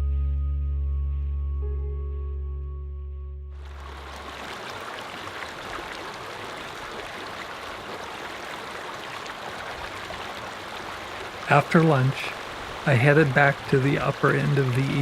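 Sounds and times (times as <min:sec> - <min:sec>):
running water rushing: 0:03.6 - 0:15.0.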